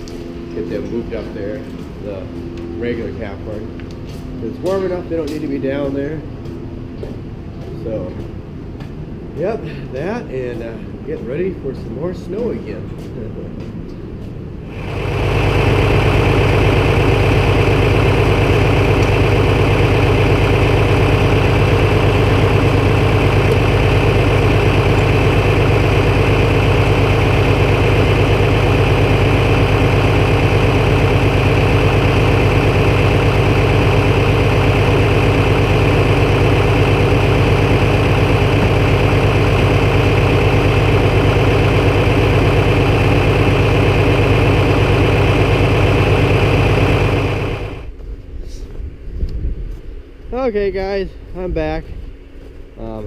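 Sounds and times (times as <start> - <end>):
tractor engine idling: 14.6 - 48.0.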